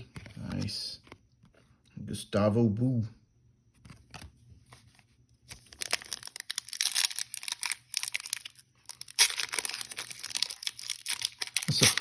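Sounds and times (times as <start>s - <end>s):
foil packaging crinkling: 5.5s - 12.0s.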